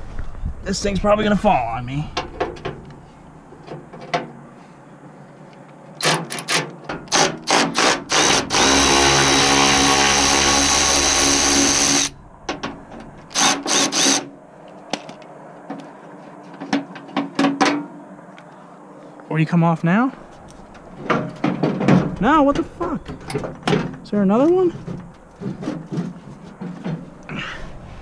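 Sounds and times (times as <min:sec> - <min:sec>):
power drill spinning on a bolt: 0:07.1 - 0:12.1, 0:13.3 - 0:14.2.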